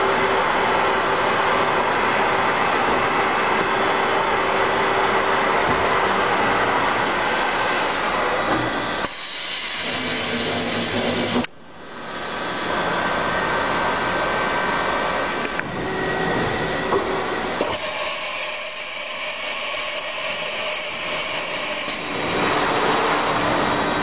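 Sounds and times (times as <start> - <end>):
machining center running: 0.0 - 9.1, 9.9 - 24.0
high steady whine: 9.8 - 24.0.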